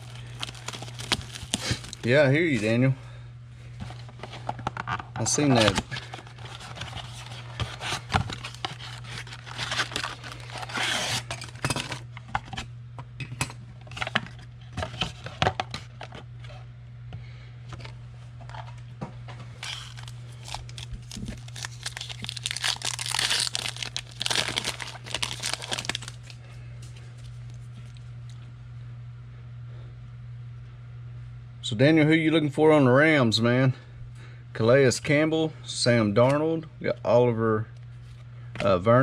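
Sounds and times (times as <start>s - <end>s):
foil wrappers tearing and crinkling: 0.0s - 2.1s, 5.4s - 12.0s, 19.5s - 26.4s
steady low hum: 0.0s - 39.0s.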